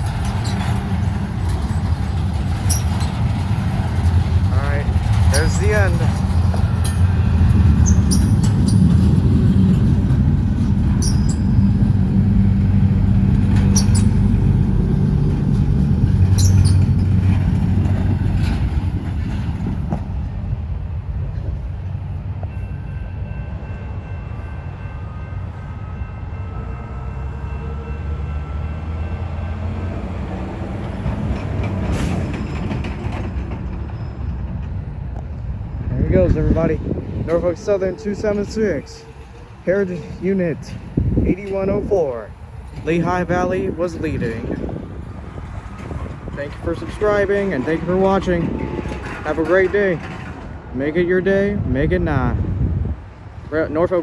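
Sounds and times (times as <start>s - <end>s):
wheels squealing: 0.0s - 20.2s, 26.7s - 50.6s
freight train rumbling: 0.0s - 54.0s.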